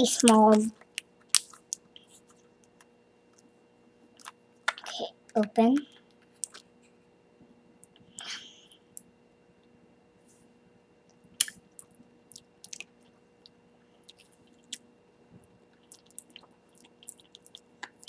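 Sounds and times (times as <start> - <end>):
wet mouth clicks and lip smacks: 11.4 - 12.9.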